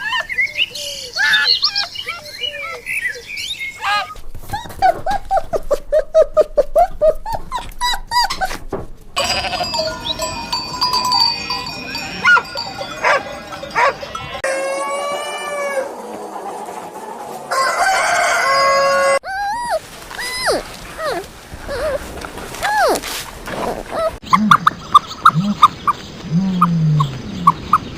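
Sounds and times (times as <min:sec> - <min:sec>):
farm animal calls: 0:09.2 - 0:16.7.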